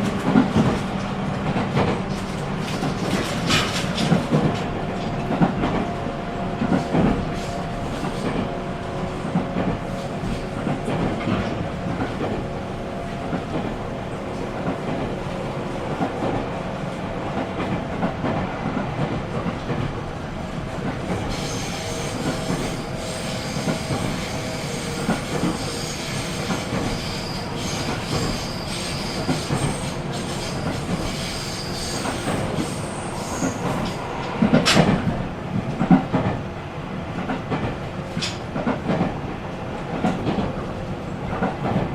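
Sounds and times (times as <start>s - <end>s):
train rumble: 0.0s - 41.9s
high-pitched wheel squeal: 21.3s - 34.2s.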